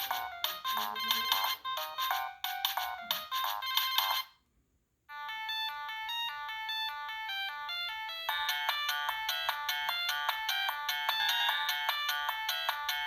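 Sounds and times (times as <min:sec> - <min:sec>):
polyphonic phone ringtone: 0:00.0 - 0:04.4, 0:05.1 - 0:13.0.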